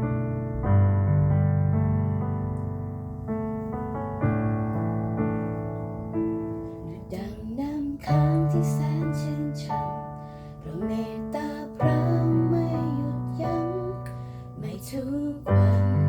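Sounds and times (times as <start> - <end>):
piano playing sustained chords: 0.0 - 16.0
person singing: 6.9 - 10.0, 10.6 - 16.0.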